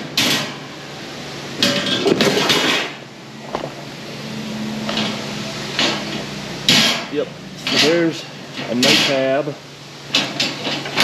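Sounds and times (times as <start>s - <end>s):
metal bars clanking: 7.6s - 9.3s.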